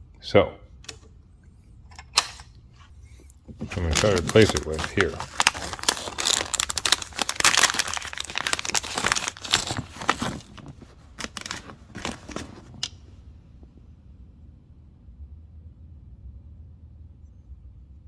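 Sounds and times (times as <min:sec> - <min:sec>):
plastic packaging crinkling: 0:03.5 - 0:13.0.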